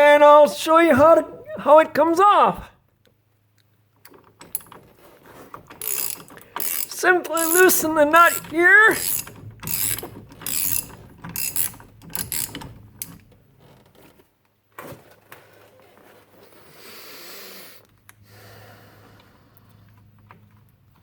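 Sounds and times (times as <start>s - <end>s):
ratchet clicking: 5.8s - 13.2s.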